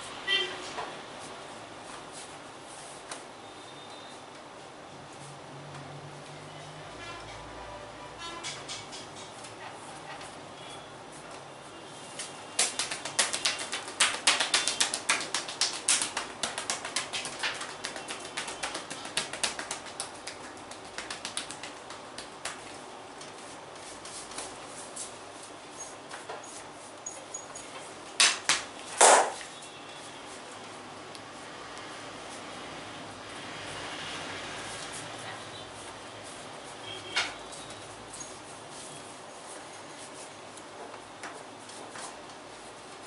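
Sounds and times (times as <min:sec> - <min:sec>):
hands slapping on skin: 0:12.2 - 0:22.8, 0:28.2 - 0:29.5.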